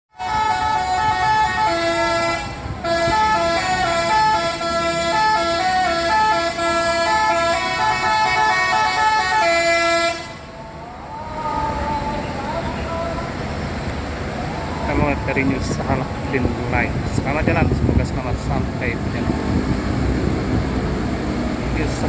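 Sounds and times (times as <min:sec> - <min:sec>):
multi-tone bus horn playing a tune: 0:00.1 - 0:10.8.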